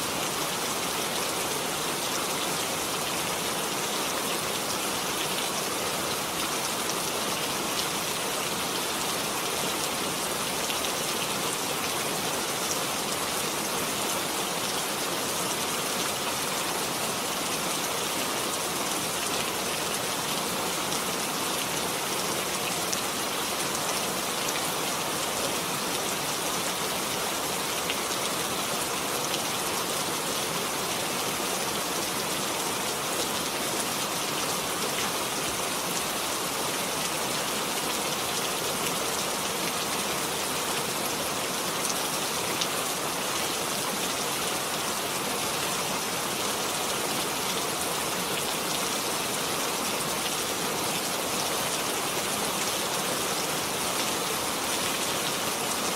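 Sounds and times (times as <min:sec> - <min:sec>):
steady rain pattering: 0:00.0 - 0:55.9.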